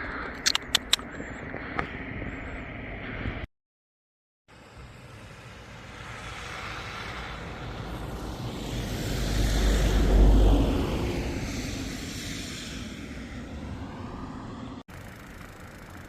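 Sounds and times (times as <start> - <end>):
road vehicle passing by: 4.6 - 16.0.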